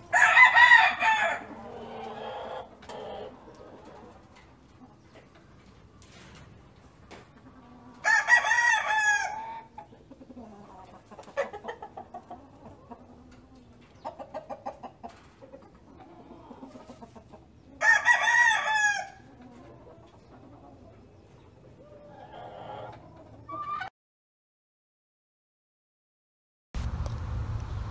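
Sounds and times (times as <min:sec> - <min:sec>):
rooster crowing: 0:00.0 - 0:02.6, 0:08.0 - 0:09.7, 0:17.8 - 0:19.2
hens clucking: 0:00.0 - 0:23.9.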